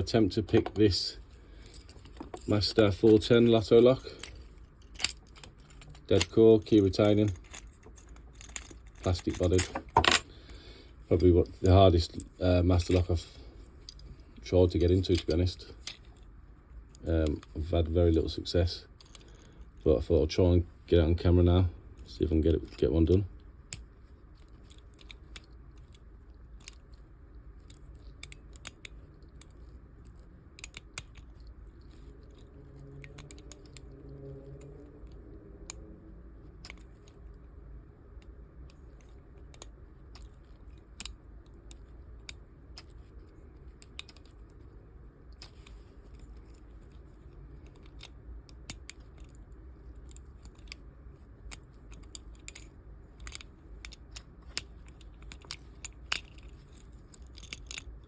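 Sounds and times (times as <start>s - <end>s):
lock pick scraping: 1.5s - 10.3s, 38.7s - 58.0s
lock pins clicking: 1.6s - 10.4s, 23.6s - 34.8s, 36.5s - 37.3s, 38.1s - 58.0s.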